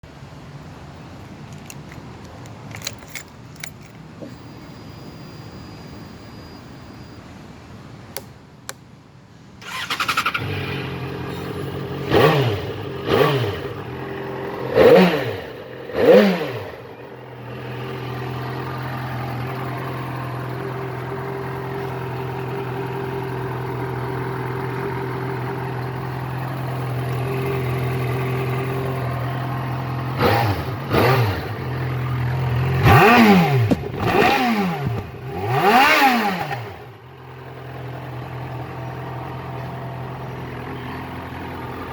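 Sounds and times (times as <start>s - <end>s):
motorcycle throttle blips: 8.1s - 8.9s, 9.6s - 41.9s
motorcycle engine idling: 9.6s - 41.9s.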